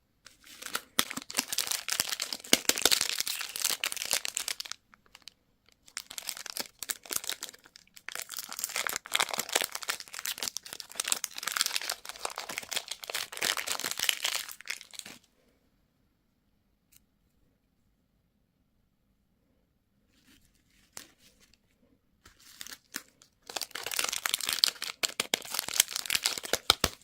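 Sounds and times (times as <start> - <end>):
plastic wrapper crinkling: 0.3 - 15.3, 22.3 - 27.0.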